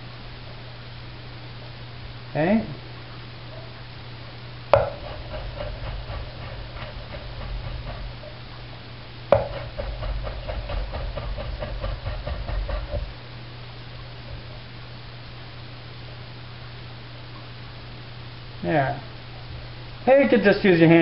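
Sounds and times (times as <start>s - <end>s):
steady low hum: 0.0s - 21.0s
knife chopping on cutting board: 4.8s - 8.2s, 9.3s - 13.1s.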